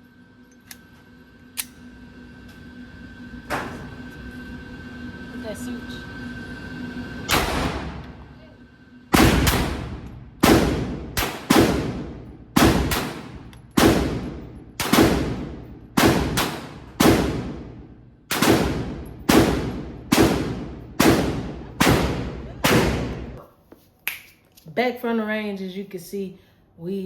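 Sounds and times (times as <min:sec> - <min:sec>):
pistol shots with echo: 0:09.2 - 0:17.6, 0:18.3 - 0:23.3.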